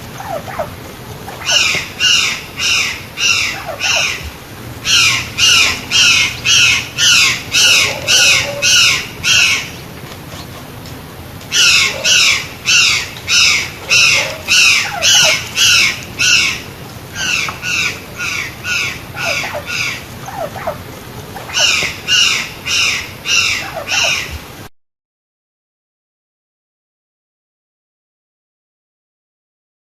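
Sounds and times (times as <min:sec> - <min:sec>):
jay calling harshly: 0:00.2 - 0:09.8, 0:11.5 - 0:20.8.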